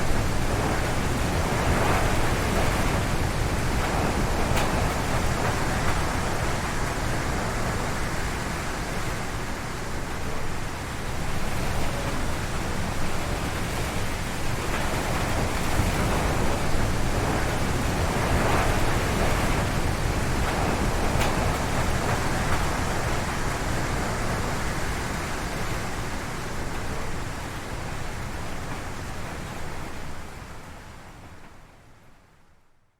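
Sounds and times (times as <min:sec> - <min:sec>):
strong wind howling through trees: 0:00.0 - 0:32.1.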